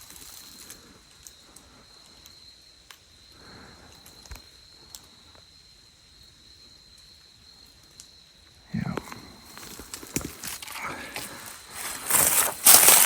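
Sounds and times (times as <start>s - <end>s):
leaves rustling: 9.1s - 13.0s.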